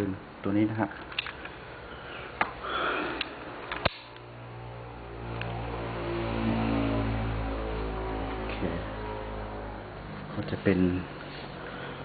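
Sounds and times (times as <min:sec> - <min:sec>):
low hum with layered tones: 0:01.4 - 0:12.0.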